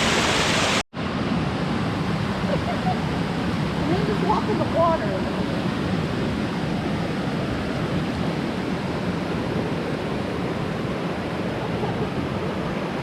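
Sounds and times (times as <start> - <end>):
river rushing over rocks: 0.0 - 2.0.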